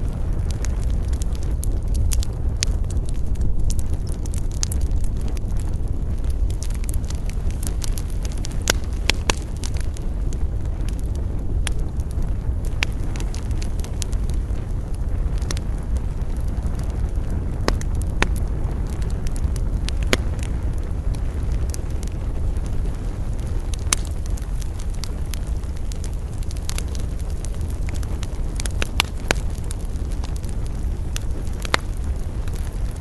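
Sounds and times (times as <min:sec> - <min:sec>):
campfire crackling and popping: 0:00.0 - 0:33.0
wind: 0:00.0 - 0:33.0.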